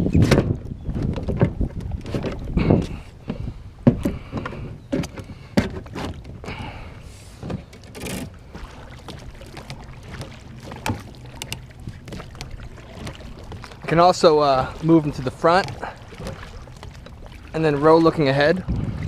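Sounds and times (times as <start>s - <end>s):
oars pulling through water: 0.0s - 19.0s
oars knocking in oarlocks: 0.2s - 6.8s, 7.4s - 18.2s
water splash: 7.2s - 19.0s.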